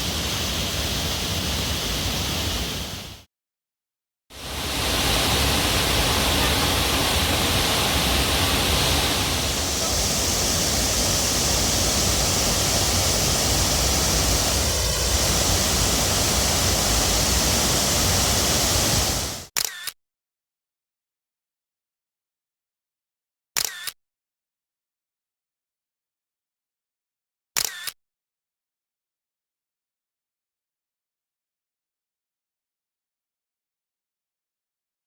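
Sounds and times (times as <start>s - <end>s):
waterfall rushing: 4.4s - 19.5s.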